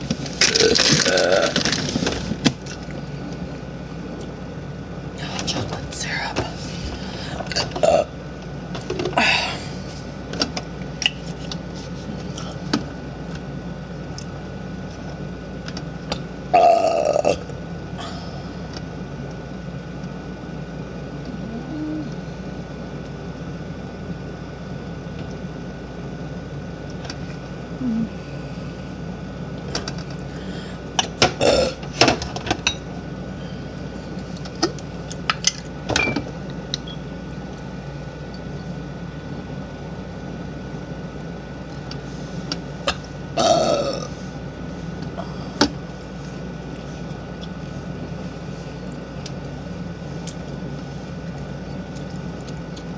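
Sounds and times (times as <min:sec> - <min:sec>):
steady background hum: 0:00.0 - 0:52.9
woman burping: 0:07.6 - 0:08.2, 0:16.5 - 0:18.1, 0:31.4 - 0:31.8, 0:43.4 - 0:44.1.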